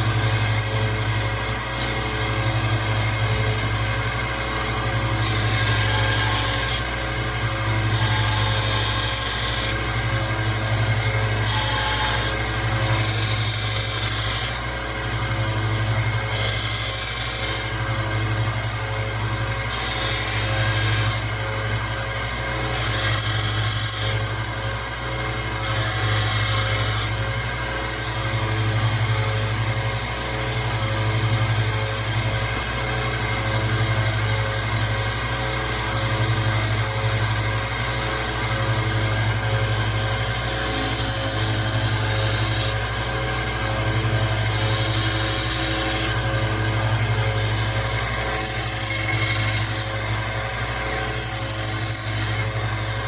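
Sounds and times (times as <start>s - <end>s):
belt sander running: 0.0s - 53.0s
knife blade grinding on belt: 46.9s - 53.0s.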